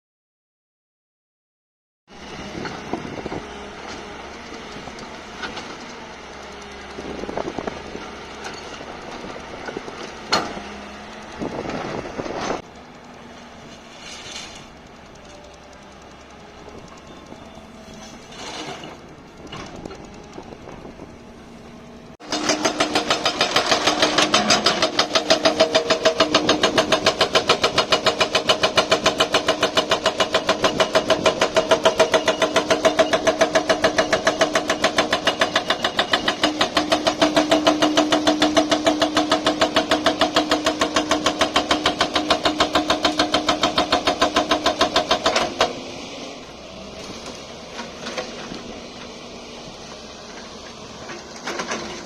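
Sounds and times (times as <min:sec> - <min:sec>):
excavator engine running: 0:02.1 - 0:52.0
hydraulic breaker hammering: 0:22.2 - 0:45.9.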